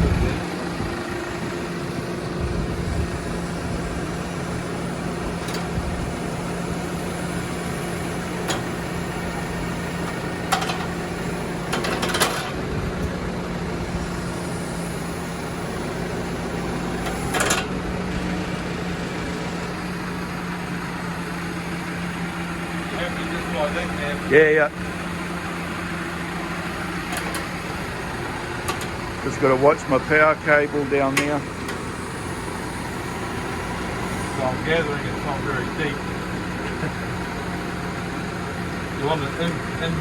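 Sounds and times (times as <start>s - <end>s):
tractor engine idling: 0.0s - 40.0s.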